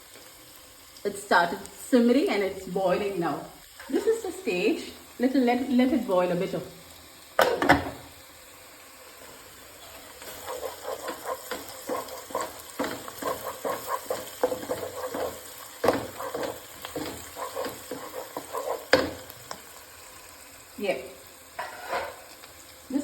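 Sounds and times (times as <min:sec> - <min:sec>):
low steady sizzle: 0:00.0 - 0:23.0
spoon scraping a cooking pot: 0:10.2 - 0:19.2, 0:21.6 - 0:22.4
spoon knocking against pot: 0:10.5 - 0:19.2.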